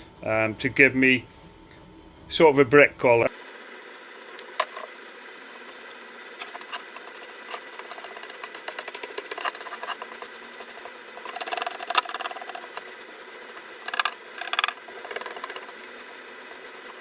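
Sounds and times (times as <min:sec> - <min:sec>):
scraping and clicking handling noises: 0:04.4 - 0:04.9, 0:05.8 - 0:17.0.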